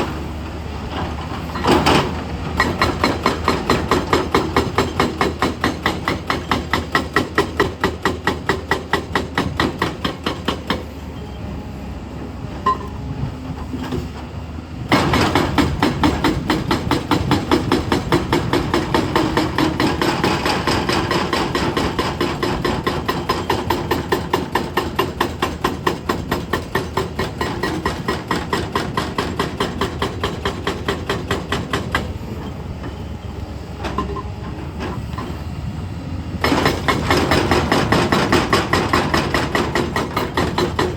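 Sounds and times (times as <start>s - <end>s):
hydraulic breaker hammering: 1.6s - 10.9s, 14.9s - 32.2s, 36.4s - 40.9s.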